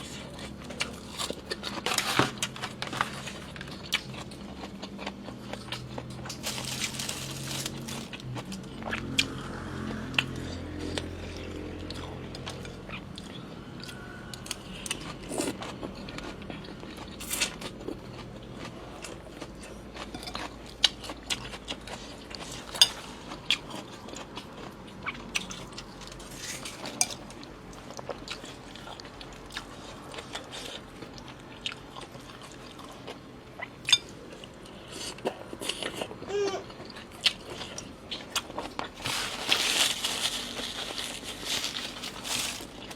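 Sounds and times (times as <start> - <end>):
person chewing: 0.0 - 26.5, 36.7 - 42.9.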